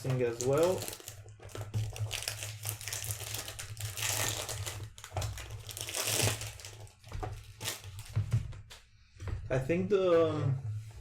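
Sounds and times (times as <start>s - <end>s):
cellophane crinkling and tearing: 0.0s - 8.2s.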